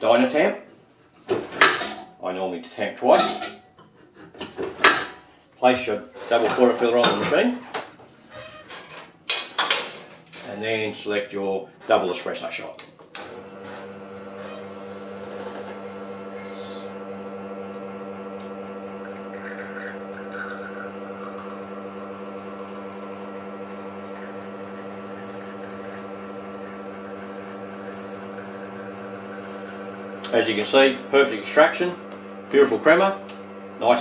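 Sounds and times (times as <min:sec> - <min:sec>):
espresso machine pump humming: 0:13.3 - 0:34.0.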